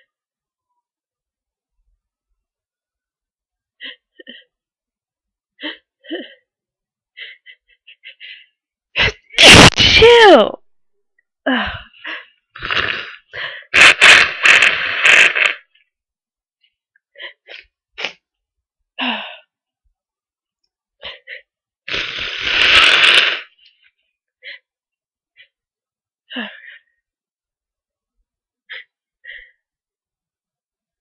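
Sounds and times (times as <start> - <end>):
person blowing nose: 12.6 - 15.8, 21.9 - 23.6.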